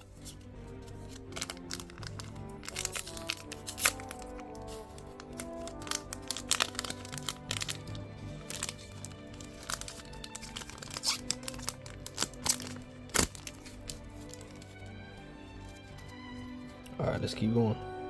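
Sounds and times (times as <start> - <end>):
background music: 0.0 - 18.0
card packaging crinkling: 0.7 - 15.1.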